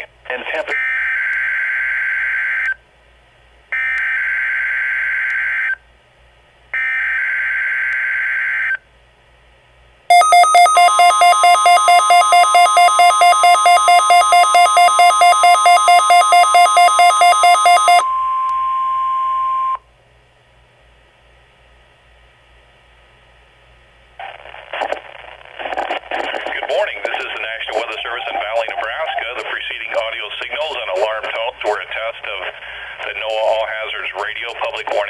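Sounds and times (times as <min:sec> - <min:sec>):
steady alert tone: 0:10.1 - 0:18.3, 0:26.8 - 0:29.6
fast-pulsing electronic alarm beep: 0:10.1 - 0:18.4, 0:27.8 - 0:29.4
buzzy data tones: 0:30.6 - 0:31.3.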